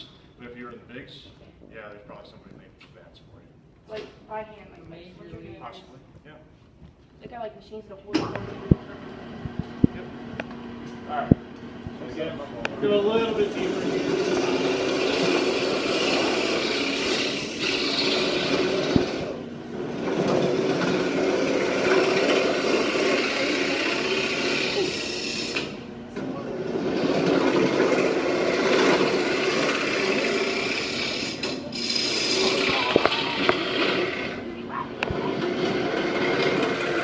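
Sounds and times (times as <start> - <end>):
wood lathe hum: 12.8 - 37.0
turning tool scraping wood: 13.4 - 25.8, 26.6 - 34.4, 35.1 - 37.0.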